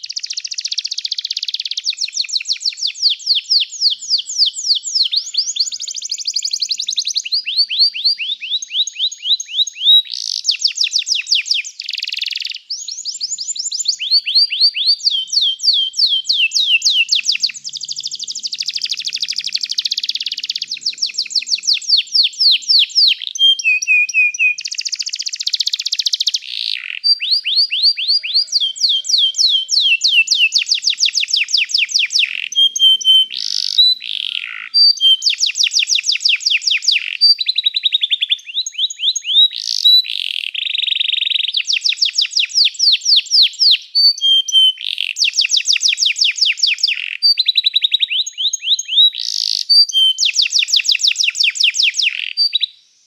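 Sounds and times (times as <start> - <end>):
canary singing trills: 0.0 - 52.8.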